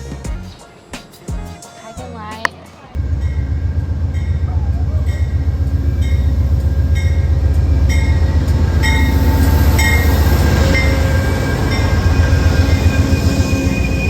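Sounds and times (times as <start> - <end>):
train low rumble: 3.0 - 14.0.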